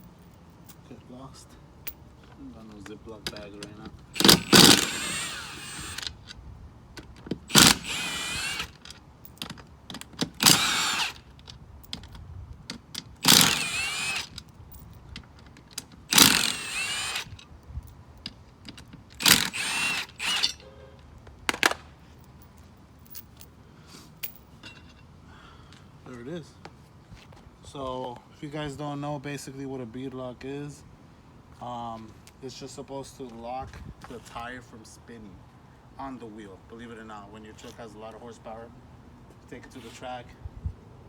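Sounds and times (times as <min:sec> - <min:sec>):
power tool whirring: 0:04.2 - 0:06.2, 0:07.5 - 0:08.9, 0:10.2 - 0:11.3, 0:13.2 - 0:14.4, 0:16.1 - 0:17.4, 0:19.1 - 0:20.7.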